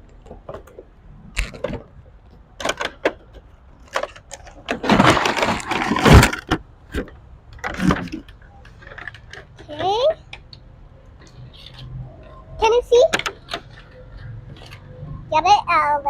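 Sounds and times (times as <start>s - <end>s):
clicks and knocks: 0.0s - 10.6s
packaging rustling and crackling: 3.8s - 6.5s.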